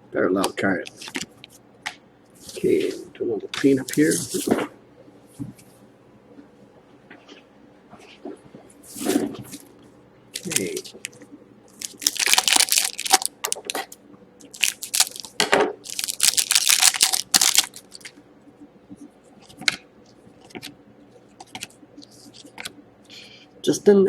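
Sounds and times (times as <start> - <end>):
foil wrappers crinkling and tearing: 10.4 - 18.2.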